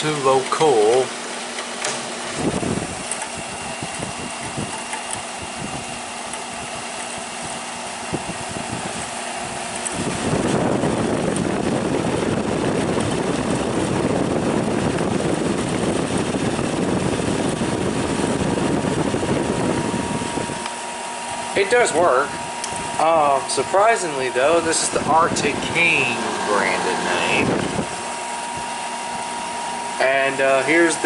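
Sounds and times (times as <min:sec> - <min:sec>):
air conditioner fan hum: 0:00.0 - 0:31.0
compressor running: 0:00.0 - 0:31.0.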